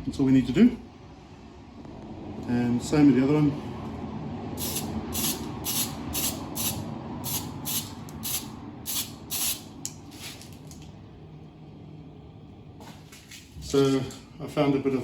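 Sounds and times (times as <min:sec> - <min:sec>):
aerosol spray can hissing: 0:04.6 - 0:09.7.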